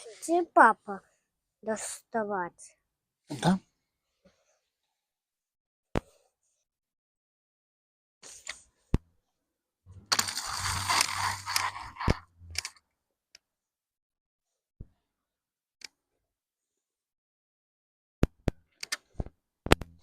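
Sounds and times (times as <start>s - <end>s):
packaging rustling and rattling: 10.1s - 12.2s.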